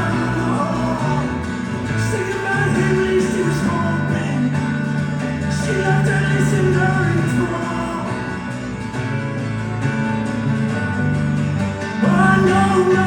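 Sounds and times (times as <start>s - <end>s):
person singing wordlessly: 0.0s - 8.4s, 12.0s - 13.0s.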